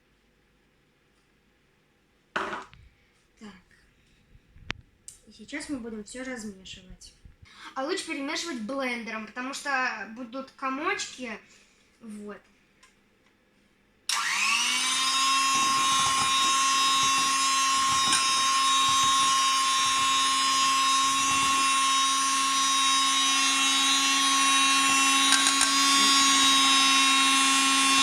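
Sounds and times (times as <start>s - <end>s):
electric blender running: 14.1s - 28.0s.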